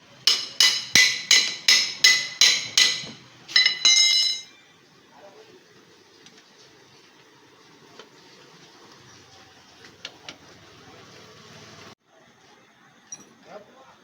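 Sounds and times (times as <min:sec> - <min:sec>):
hammer striking metal: 0:00.3 - 0:04.5
metallic clatter: 0:00.3 - 0:04.5.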